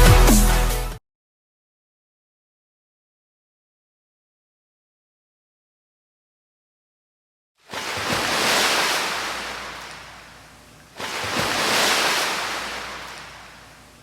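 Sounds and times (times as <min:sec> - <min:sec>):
sea waves breaking: 0:07.7 - 0:14.0.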